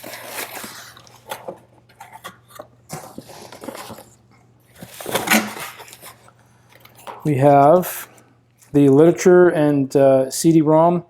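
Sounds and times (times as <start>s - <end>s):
packaging and paper rustling: 0.0s - 7.3s
small knocks and scrapes: 0.0s - 7.3s.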